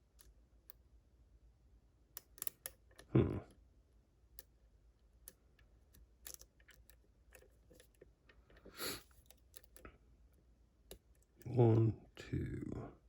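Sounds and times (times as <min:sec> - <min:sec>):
lock pick clicking: 0:02.2 - 0:03.0.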